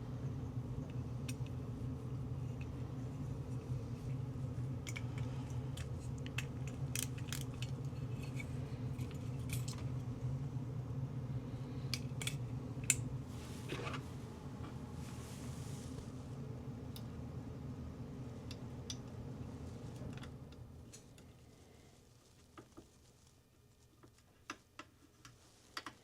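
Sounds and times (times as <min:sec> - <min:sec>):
steady low hum: 0:00.0 - 0:23.9.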